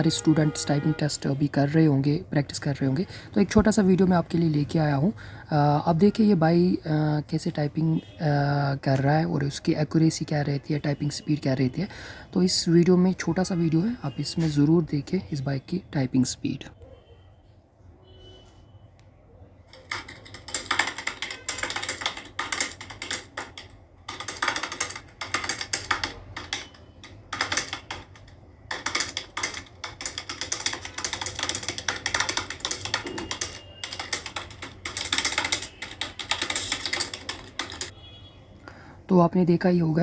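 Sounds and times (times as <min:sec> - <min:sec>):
rapid keyboard typing: 0:00.0 - 0:16.3, 0:19.6 - 0:38.0.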